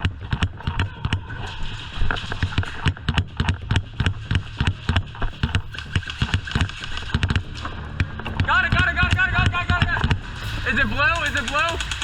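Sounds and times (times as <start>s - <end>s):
running footsteps: 3.0s - 8.6s
gear rattling: 10.4s - 12.0s
airsoft guns firing: 10.6s - 12.0s.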